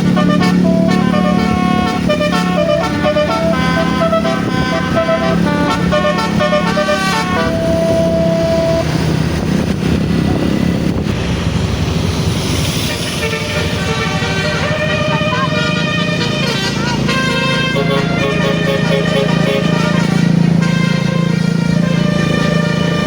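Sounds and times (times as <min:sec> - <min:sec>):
bus horn playing a melody: 0:00.0 - 0:09.4, 0:12.8 - 0:23.0
engine and road noise: 0:00.0 - 0:23.0.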